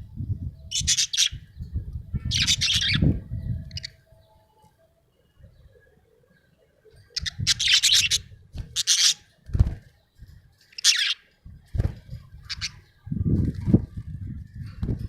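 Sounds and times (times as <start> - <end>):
budgerigar chirping chatter: 10.8 - 11.2.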